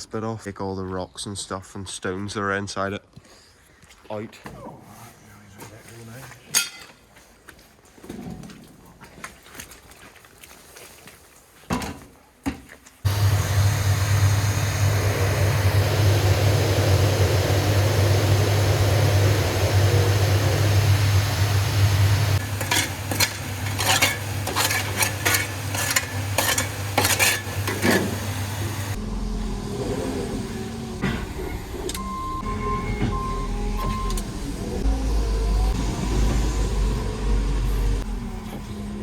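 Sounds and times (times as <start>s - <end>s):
deep engine rumble: 13.1s - 39.0s
engine running: 13.1s - 39.0s.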